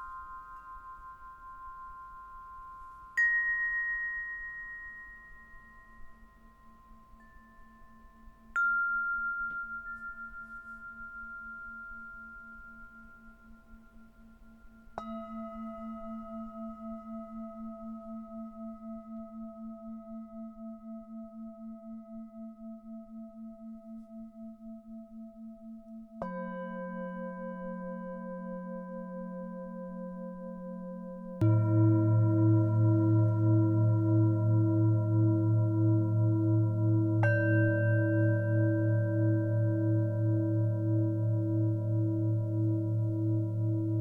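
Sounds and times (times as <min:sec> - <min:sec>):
singing bowl struck and ringing: 0:00.0 - 0:22.8, 0:26.2 - 0:44.0
wavering hum of higher bowl: 0:00.0 - 0:44.0
deeper singing bowl pulsing: 0:31.4 - 0:44.0
higher singing bowl ringing: 0:31.4 - 0:44.0.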